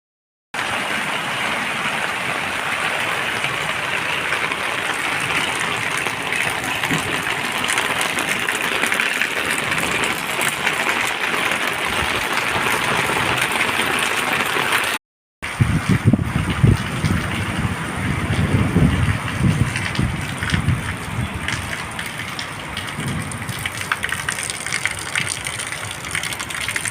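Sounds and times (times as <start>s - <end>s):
heavy rain: 0.6s - 26.9s
wind buffeting microphone: 15.4s - 25.2s.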